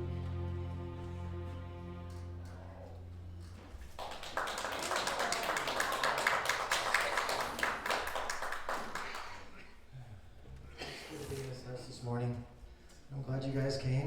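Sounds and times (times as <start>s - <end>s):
congregation applauding: 3.8s - 9.7s.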